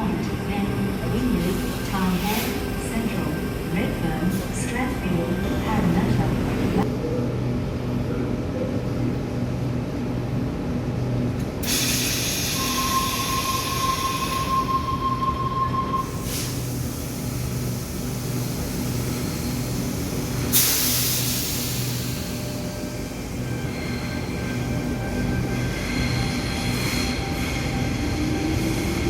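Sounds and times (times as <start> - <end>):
electric train humming: 0.0 - 29.0
air hiss: 11.6 - 14.5, 16.0 - 22.4
steady squeal: 12.1 - 16.5.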